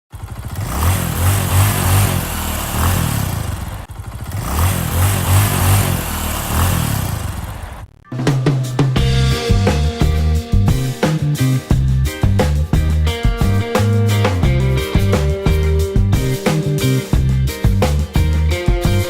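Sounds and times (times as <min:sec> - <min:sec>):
motorcycle engine revving: 0:00.1 - 0:12.9.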